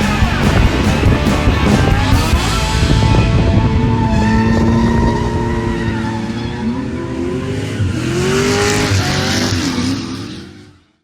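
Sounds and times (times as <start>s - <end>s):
car engine revving: 0.0s - 11.0s
tyre squeal: 3.8s - 7.2s.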